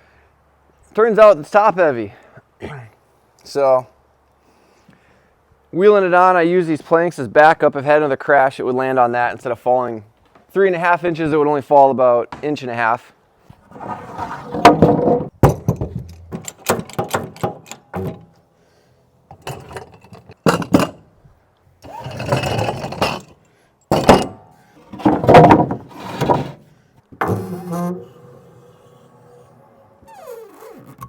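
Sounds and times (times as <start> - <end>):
metal scraping over wooden planks: 13.5 - 18.3, 19.3 - 21.0, 21.8 - 29.8
heavy machine knocking and clanking: 14.8 - 18.3.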